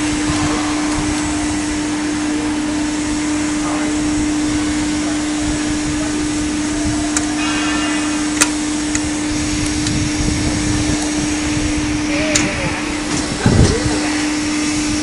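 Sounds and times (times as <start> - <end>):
hydraulic pump motor humming: 0.0 - 15.0
sharp clicks: 8.4 - 10.0, 12.3 - 12.6.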